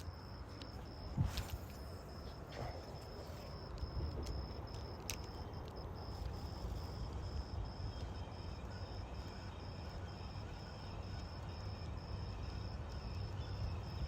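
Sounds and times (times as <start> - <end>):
insects chirping in pulsed trill: 0.0 - 14.0
sharp clicks: 3.6 - 6.4.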